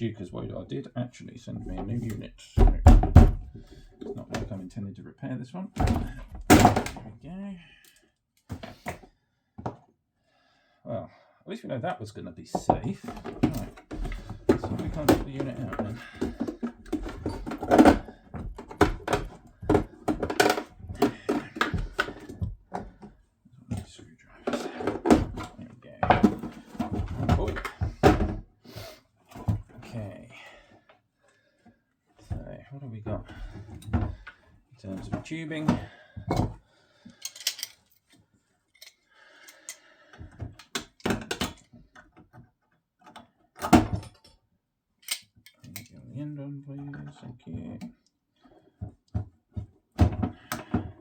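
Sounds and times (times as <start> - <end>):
hand tools clattering: 12.6 - 22.5, 37.1 - 37.9.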